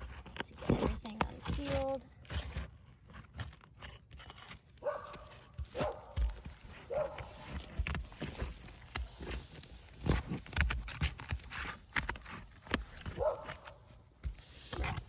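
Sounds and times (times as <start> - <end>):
roof snake scraping under shingles: 0.0 - 15.0
dog barking: 4.8 - 7.5, 13.1 - 13.8.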